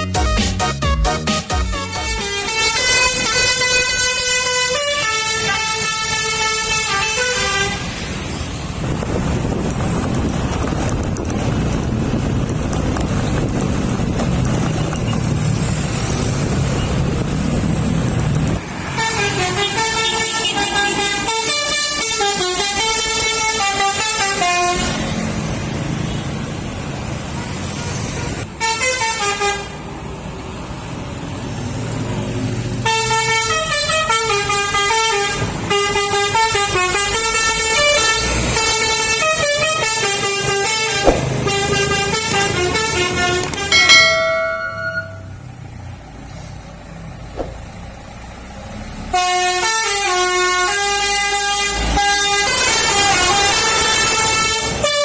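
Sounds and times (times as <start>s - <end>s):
multi-tone air horn playing a tune: 0.0s - 8.0s
diesel truck engine running: 8.1s - 18.7s, 35.5s - 44.2s, 45.3s - 49.5s.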